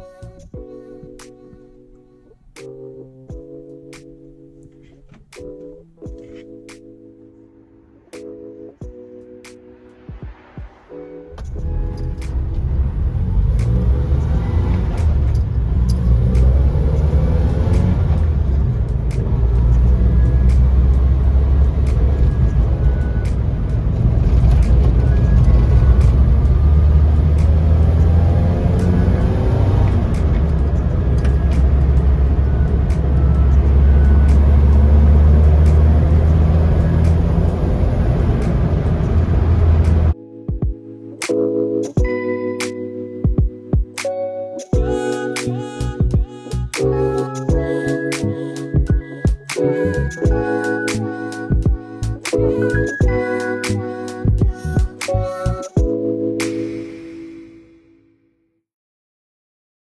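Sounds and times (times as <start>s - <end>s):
music: 0.0s - 58.6s
engine low rumble: 11.4s - 40.2s
road noise: 11.4s - 40.2s.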